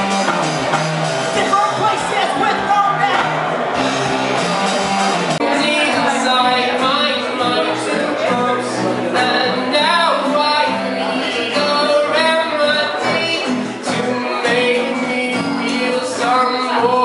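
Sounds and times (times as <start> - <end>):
instrumental accompaniment: 0.0 - 17.0
person singing: 5.4 - 17.0.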